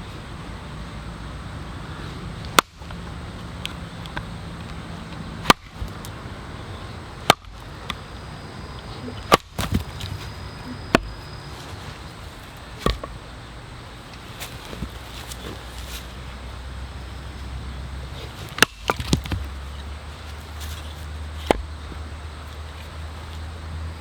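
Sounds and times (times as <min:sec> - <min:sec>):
blade chopping wood: 0:02.5 - 0:03.0, 0:05.4 - 0:06.2, 0:07.2 - 0:08.0, 0:09.2 - 0:11.2, 0:12.8 - 0:13.2, 0:18.2 - 0:19.6, 0:21.4 - 0:21.7.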